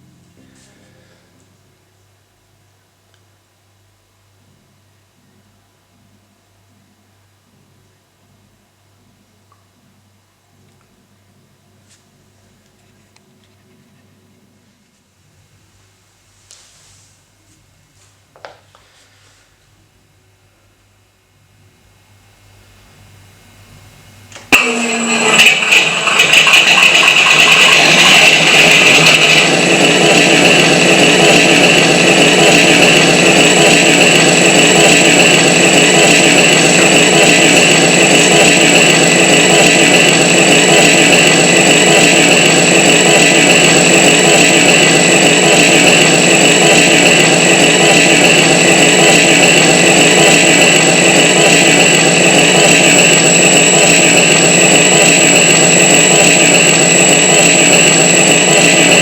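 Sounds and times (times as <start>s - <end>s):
steady high whine: 21.6s - 59.0s
model plane engine running: 24.6s - 59.0s.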